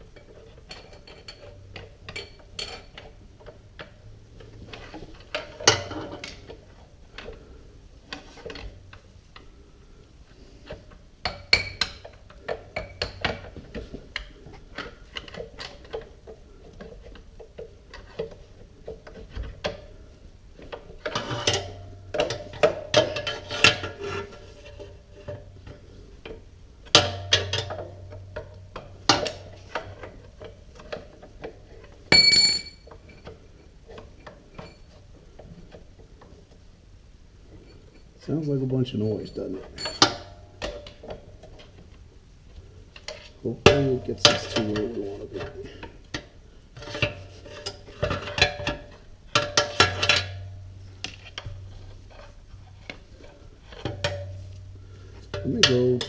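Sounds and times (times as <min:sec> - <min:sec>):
metal tools clinking on metal: 0:39.1 - 0:40.9.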